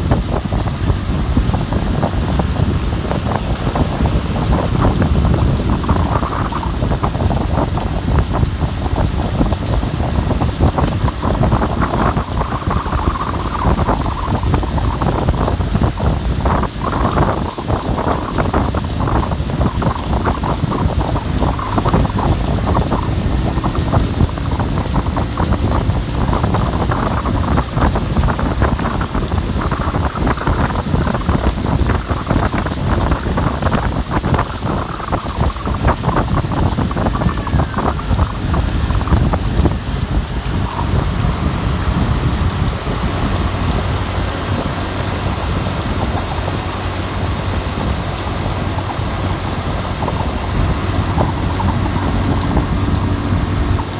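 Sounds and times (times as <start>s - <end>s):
heavy low rumble: 0.0s - 53.9s
rain in blowing wind: 0.0s - 53.9s.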